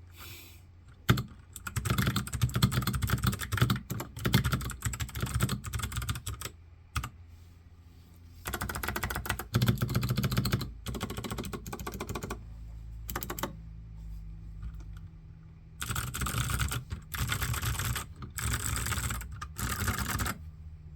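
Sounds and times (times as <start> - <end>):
mechanical keyboard typing: 0.9 - 7.1, 8.4 - 12.4, 13.1 - 13.6, 15.8 - 20.4.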